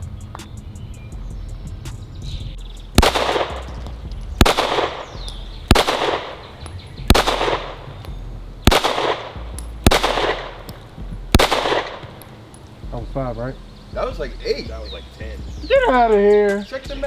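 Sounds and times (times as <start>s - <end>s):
pistol shots with echo: 3.0s - 3.8s, 4.4s - 12.4s.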